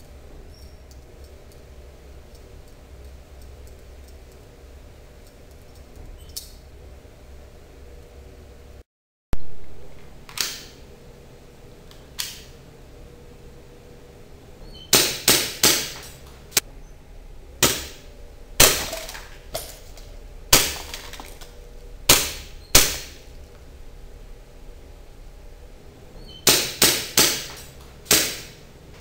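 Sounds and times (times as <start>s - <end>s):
airsoft pistol shots: 22.1s - 23.2s, 26.4s - 28.6s.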